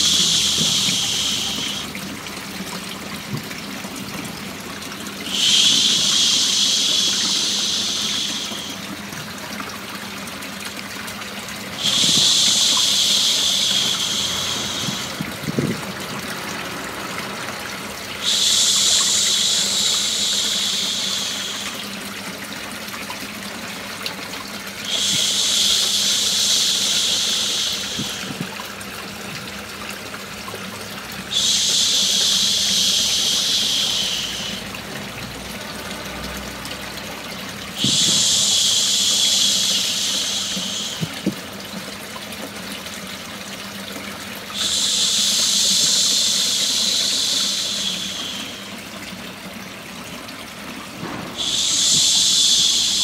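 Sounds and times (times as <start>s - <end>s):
person shushing: 0.0s - 1.9s, 5.3s - 8.8s, 11.8s - 15.2s, 31.3s - 34.8s
running water white noise: 0.0s - 53.0s.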